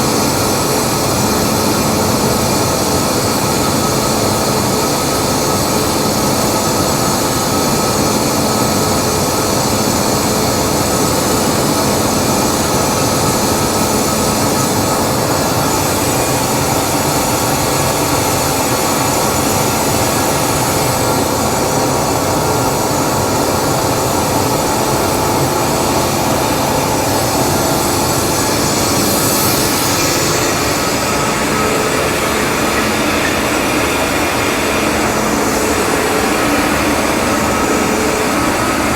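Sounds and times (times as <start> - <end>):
air compressor droning: 0.0 - 38.9
high-pitched hiss: 0.0 - 38.9.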